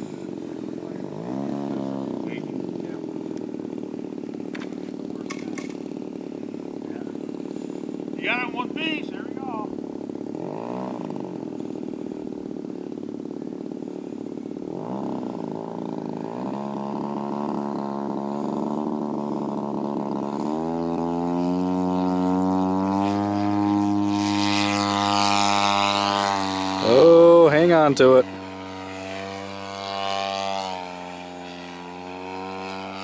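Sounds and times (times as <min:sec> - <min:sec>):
model plane engine running: 0:00.0 - 0:33.0
propeller and air rush: 0:03.0 - 0:10.4.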